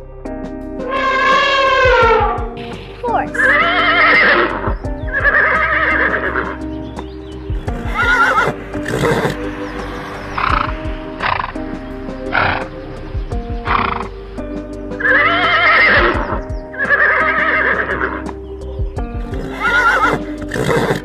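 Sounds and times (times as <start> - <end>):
background music: 0.0 - 21.0
horse whinnying: 0.8 - 2.4, 3.4 - 6.6, 7.9 - 9.4, 15.0 - 18.3, 19.3 - 21.0
breathy bursts: 7.9 - 10.7, 19.4 - 21.0.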